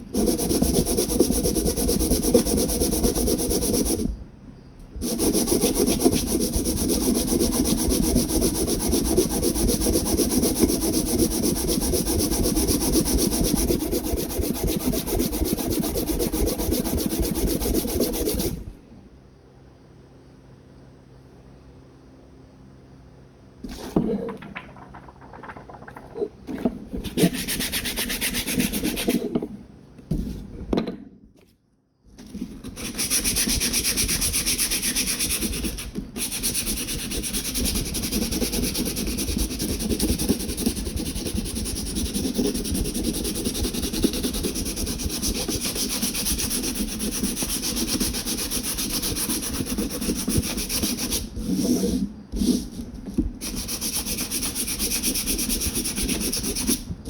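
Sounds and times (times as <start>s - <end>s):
hand sanding with sandpaper: 0.0s - 4.2s, 5.0s - 18.6s, 27.0s - 29.3s, 32.6s - 56.9s.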